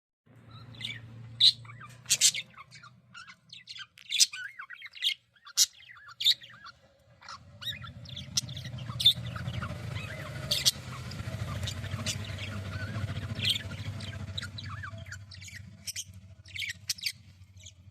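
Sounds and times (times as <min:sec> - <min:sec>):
budgerigars chirping and chattering: 0:00.3 - 0:17.9
faint low hum: 0:00.3 - 0:17.9.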